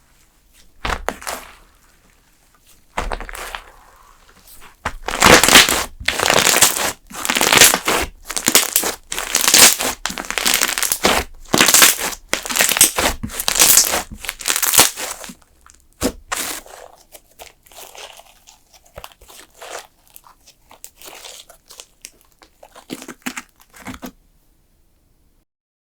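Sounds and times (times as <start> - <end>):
slime squishing and crackling: 0.5 - 24.2.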